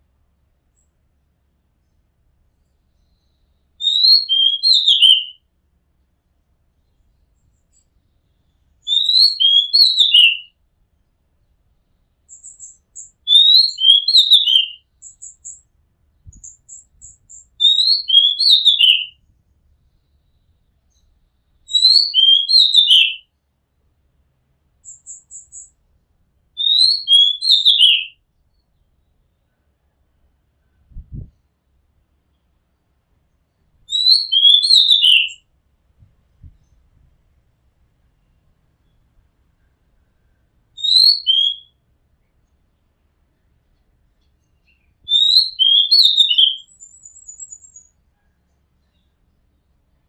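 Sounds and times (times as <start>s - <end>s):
thin high bird chirps: 2.8s - 5.4s, 6.8s - 10.5s, 12.2s - 19.4s, 20.0s - 23.2s, 24.8s - 25.8s, 26.6s - 28.8s, 33.9s - 35.4s, 40.2s - 41.7s, 44.2s - 49.4s
bird singing whistled phrase: 3.1s - 5.4s, 8.9s - 10.5s, 12.3s - 15.6s, 16.3s - 19.2s, 21.7s - 23.2s, 26.6s - 28.2s, 33.9s - 35.4s, 40.8s - 41.7s, 44.7s - 47.9s.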